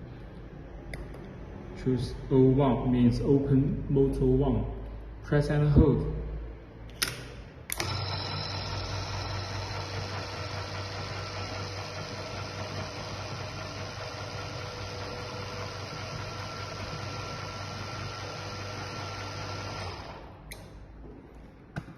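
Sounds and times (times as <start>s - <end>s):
gate motor starting click: 7.0s - 9.2s
gate motor humming: 7.7s - 20.6s.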